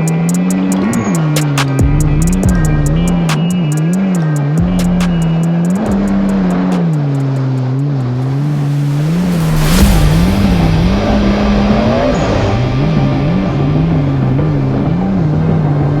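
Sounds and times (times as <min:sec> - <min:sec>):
hip-hop instrumental: 0:00.0 - 0:16.0
ticking hi-hats: 0:00.0 - 0:16.0
deep wavering bass line: 0:01.8 - 0:03.7, 0:04.6 - 0:06.9, 0:08.0 - 0:16.0
loud rushing noise: 0:08.0 - 0:16.0.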